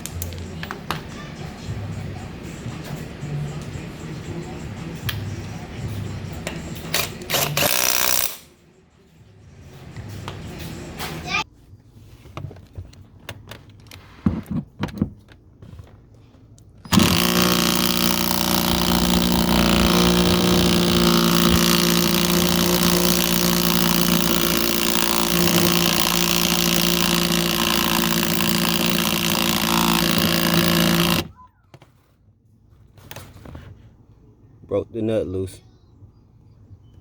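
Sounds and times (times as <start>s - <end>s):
impact wrench hammering on nut: 16.9s - 31.3s.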